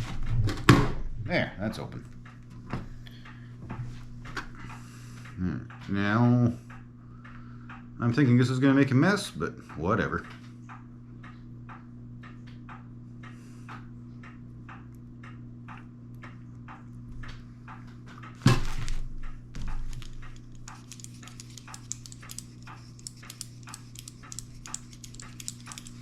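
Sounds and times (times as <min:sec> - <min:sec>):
low steady hum: 0:00.0 - 0:26.0
light regular ticking: 0:01.7 - 0:18.4, 0:19.1 - 0:26.0
small clicks: 0:19.2 - 0:26.0.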